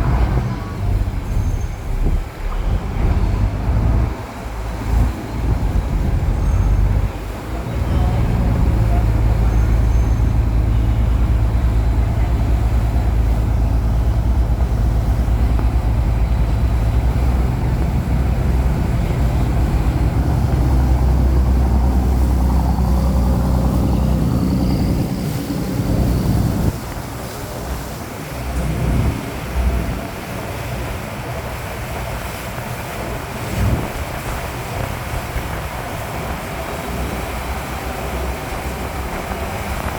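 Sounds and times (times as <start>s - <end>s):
boat engine running: 0.0s - 39.9s.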